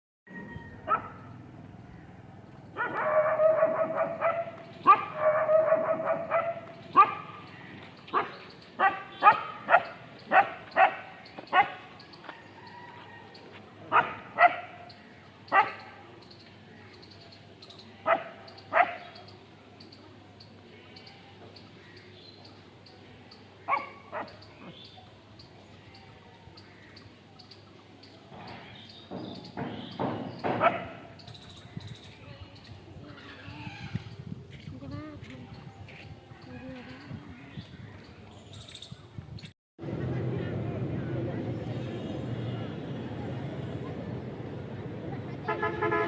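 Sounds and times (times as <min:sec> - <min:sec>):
dog barking: 0:00.9 - 0:01.3, 0:02.8 - 0:07.4, 0:08.2 - 0:11.8, 0:13.9 - 0:14.8, 0:15.5 - 0:15.9, 0:18.1 - 0:19.1, 0:23.7 - 0:24.4, 0:30.6 - 0:31.1.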